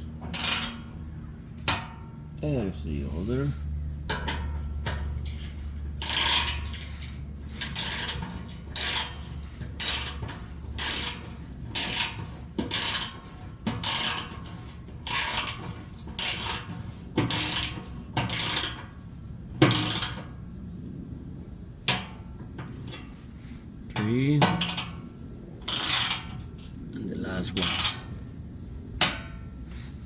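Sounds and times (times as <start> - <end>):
hand ratchet clicking: 0.3 - 0.9, 4.1 - 19.0, 25.6 - 26.3.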